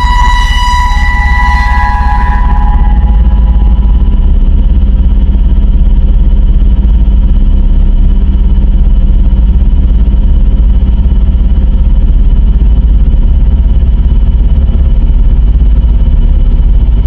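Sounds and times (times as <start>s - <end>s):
faint high tones: 0.0s - 5.4s
distorted synthesized alarm drone: 0.0s - 6.8s.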